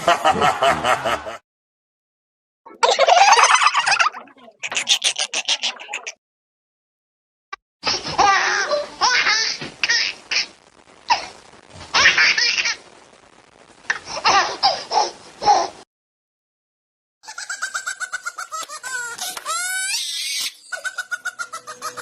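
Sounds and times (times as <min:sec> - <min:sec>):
high-pitched laugh: 0:00.0 - 0:01.4, 0:02.8 - 0:06.2, 0:17.3 - 0:22.0.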